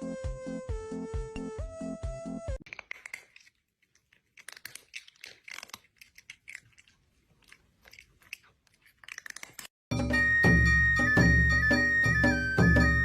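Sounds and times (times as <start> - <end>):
crunchy chewing: 2.6 - 9.8.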